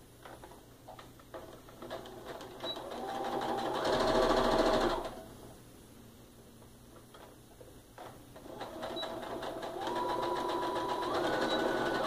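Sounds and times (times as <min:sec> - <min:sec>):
sewing machine stitching: 0:01.3 - 0:05.2, 0:08.4 - 0:12.0.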